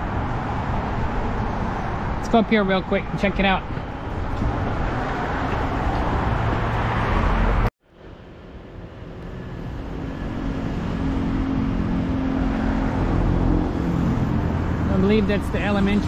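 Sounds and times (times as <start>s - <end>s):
road traffic noise: 0.0s - 16.0s
steady engine hum: 0.0s - 16.0s.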